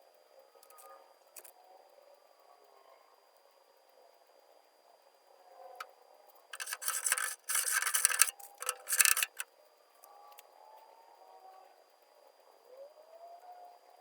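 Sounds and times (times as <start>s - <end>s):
click: 6.6s - 9.4s.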